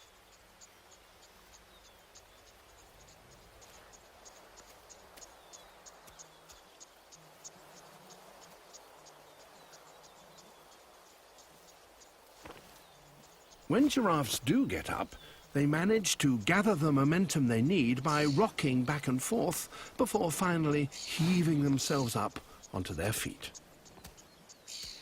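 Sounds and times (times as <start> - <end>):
insects chirping: 0.0 - 25.0.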